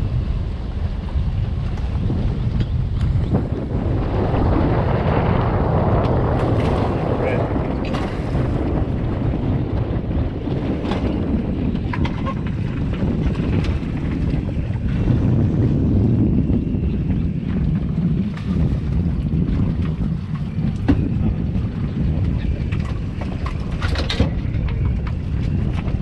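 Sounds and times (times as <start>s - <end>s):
boat hull and water noise: 0.0s - 26.0s
wind buffeting microphone: 0.0s - 26.0s.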